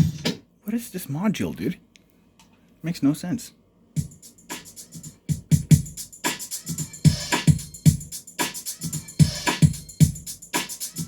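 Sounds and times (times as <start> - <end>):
drum machine beat: 0.0 - 0.4, 4.0 - 11.0.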